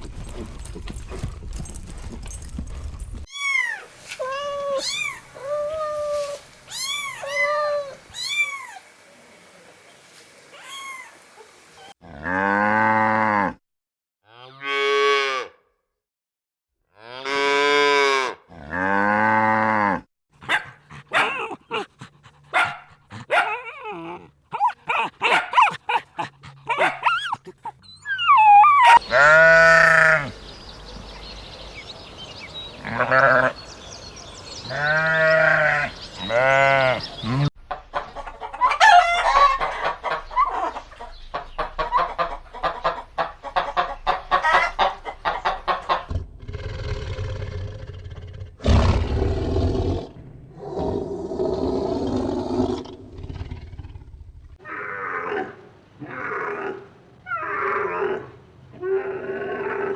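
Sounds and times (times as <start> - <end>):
rough grunting animal calls: 18.5 - 30.8, 34.6 - 37.5, 44.6 - 56.7
goat bleating: 34.7 - 37.5
chicken clucking: 37.1 - 46.1.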